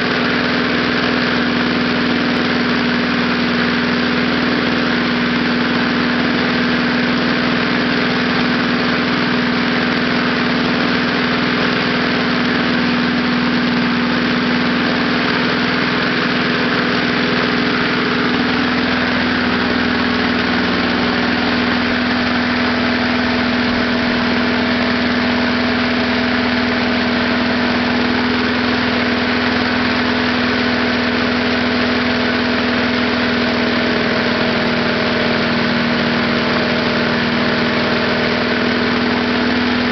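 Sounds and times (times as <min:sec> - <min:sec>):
small lawnmower engine running: 0:00.0 - 0:39.9.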